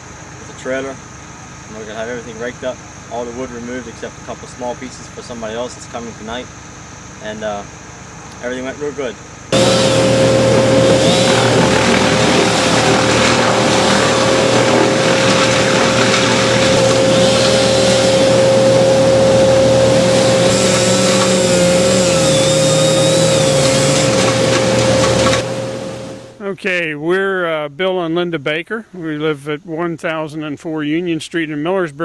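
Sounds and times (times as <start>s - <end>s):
engine-driven machine humming: 9.4s - 26.4s.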